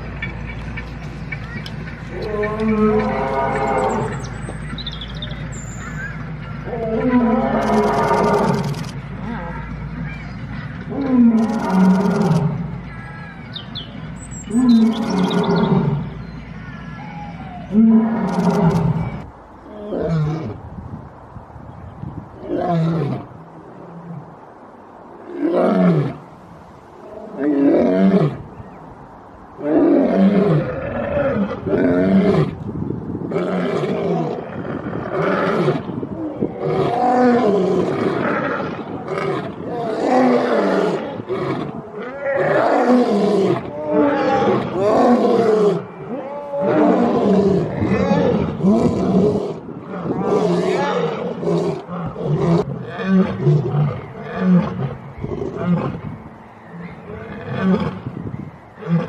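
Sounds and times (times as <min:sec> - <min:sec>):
lion roaring: 0:36.4 - 0:56.0.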